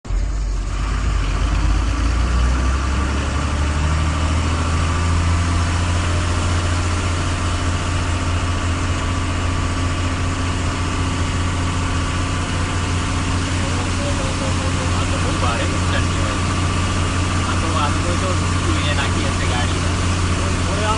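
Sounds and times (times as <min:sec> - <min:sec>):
engine idling with low rumble: 0:00.0 - 0:20.9.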